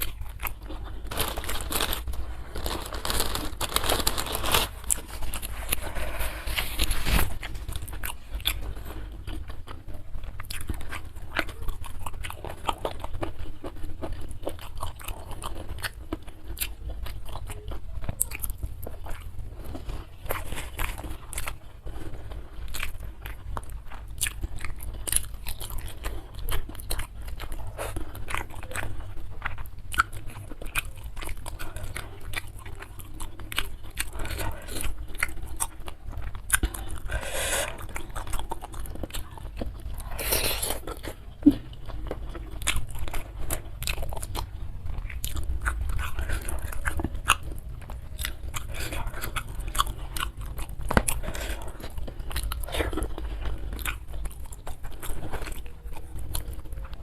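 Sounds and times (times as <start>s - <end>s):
chewing crisp food: 0.0s - 57.0s.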